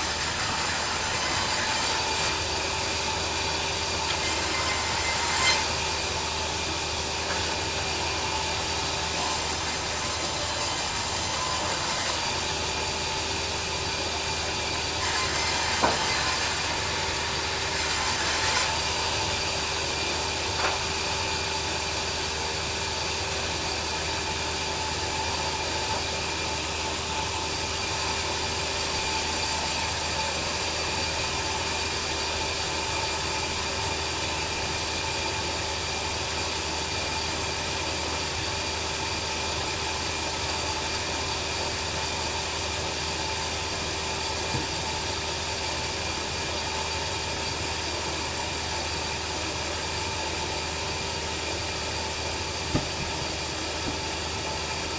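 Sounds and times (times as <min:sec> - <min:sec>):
bandsaw machine humming: 0:00.0 - 0:32.5.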